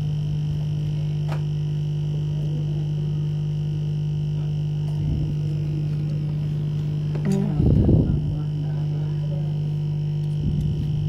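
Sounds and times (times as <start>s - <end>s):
hot-air blower hum and whine: 0.0s - 11.0s.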